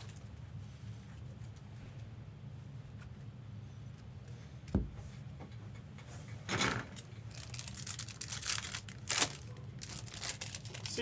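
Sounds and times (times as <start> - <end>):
wrappers tearing and crinkling: 7.0 - 11.0.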